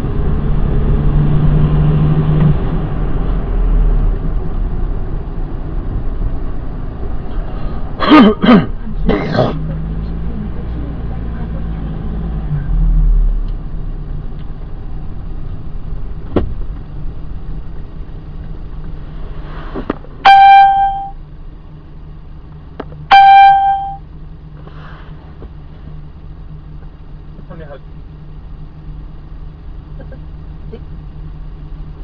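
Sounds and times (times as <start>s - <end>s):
low hum inside car: 0.0s - 32.0s
loud steady beep: 20.2s - 21.2s, 23.1s - 24.0s.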